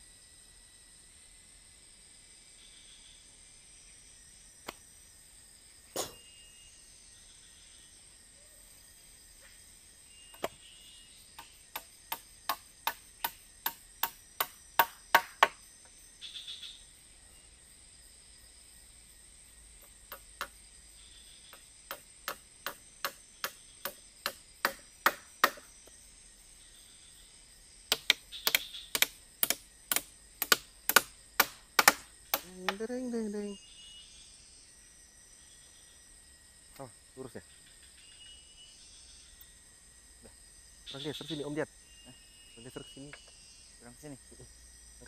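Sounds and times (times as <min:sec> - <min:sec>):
tool knocking on wood: 0:10.4 - 0:10.6, 0:11.7 - 0:15.6, 0:19.8 - 0:20.6, 0:21.9 - 0:25.7, 0:27.9 - 0:32.8.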